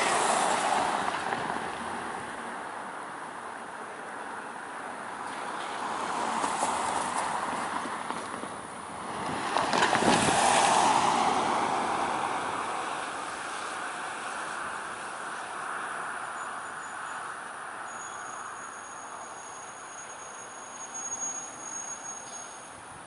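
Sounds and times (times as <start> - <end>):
vehicle passing by: 0.0 - 2.5, 8.9 - 16.4
high insect chirp: 16.2 - 23.0.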